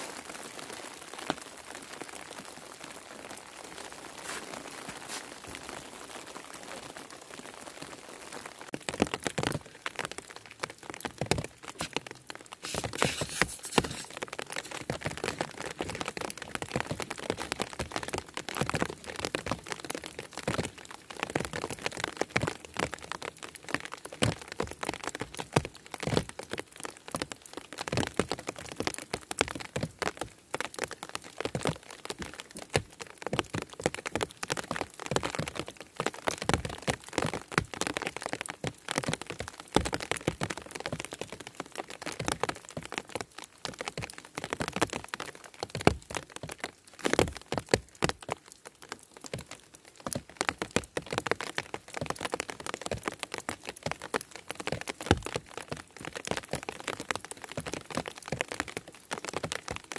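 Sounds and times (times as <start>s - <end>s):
snow ticking and tapping: 3.4s - 6.9s, 8.6s - 59.9s
falling snow hiss: 12.6s - 14.8s.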